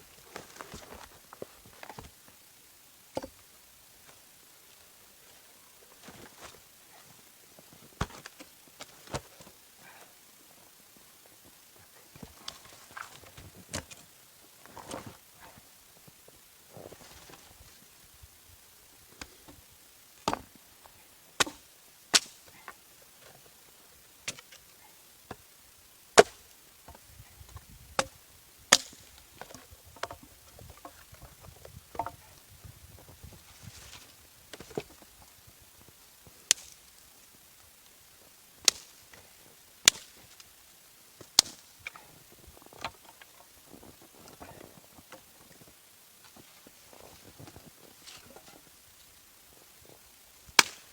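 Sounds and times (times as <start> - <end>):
wood being chopped: 8.0 - 9.3, 20.2 - 20.5, 21.4 - 22.4, 26.2 - 27.0, 28.0 - 30.2, 39.9 - 40.2, 50.5 - 50.9.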